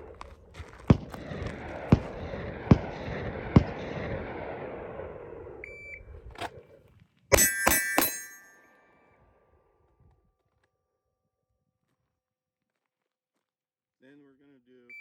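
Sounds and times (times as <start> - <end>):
ringing beep-like tone: 7.3 - 8.6
steel plate ringing: 7.3 - 8.6.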